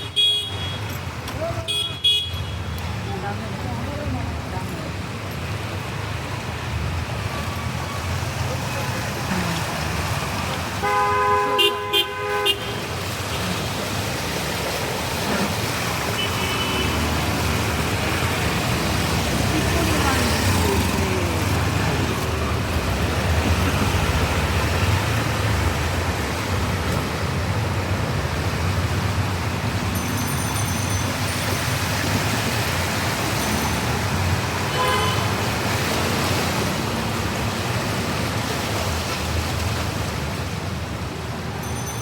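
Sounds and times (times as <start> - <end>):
heavy rain: 0.0 - 42.0
street traffic: 0.0 - 42.0
short ringing tone: 29.9 - 31.6, 41.6 - 42.0.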